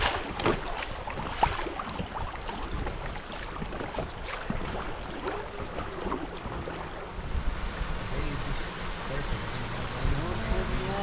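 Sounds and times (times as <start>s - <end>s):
small splashes: 0.0s - 7.2s
water lapping against a raft: 0.0s - 11.0s
wind rumbling on microphone: 0.0s - 11.0s.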